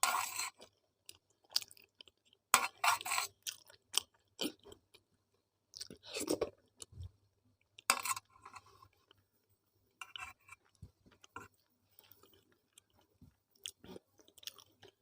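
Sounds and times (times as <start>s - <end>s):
close chewing: 10.0s - 15.0s.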